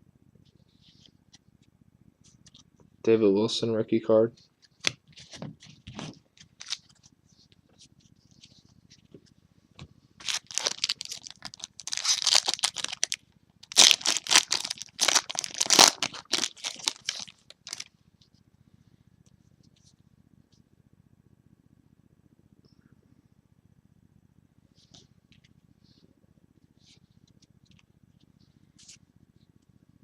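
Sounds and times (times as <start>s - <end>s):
foil wrapper tearing and crinkling: 5.9s - 6.9s, 10.2s - 17.9s.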